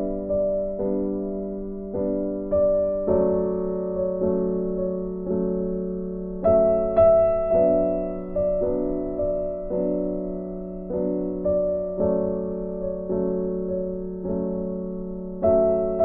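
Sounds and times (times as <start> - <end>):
gentle electric piano melody: 0.0 - 16.0.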